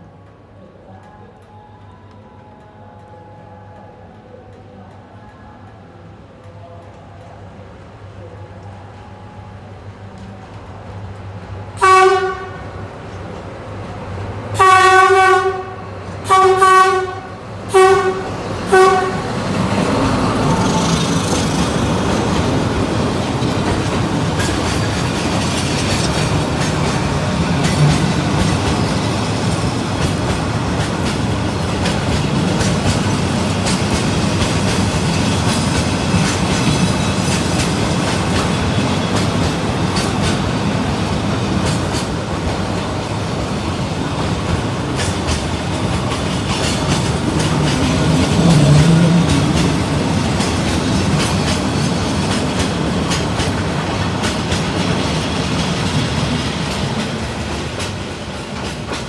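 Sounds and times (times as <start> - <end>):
train engine rumble: 0.0 - 59.0
locomotive horn blasts: 11.8 - 12.7, 14.6 - 19.6
wheels clattering over rail joints: 18.0 - 59.0.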